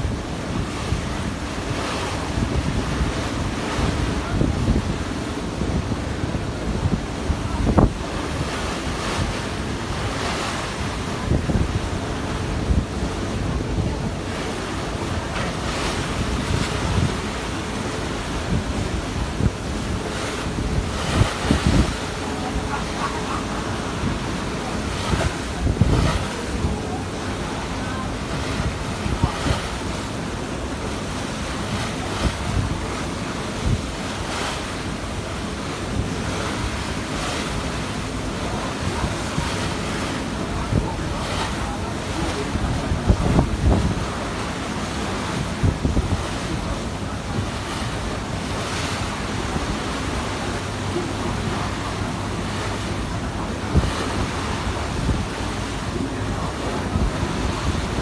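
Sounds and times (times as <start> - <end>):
water washing under boat: 0.0 - 58.0
wind rushing over microphone: 0.0 - 58.0
wind thumps on microphone: 2.2 - 10.0, 18.3 - 27.0, 42.3 - 44.4, 45.0 - 50.3, 52.5 - 58.0.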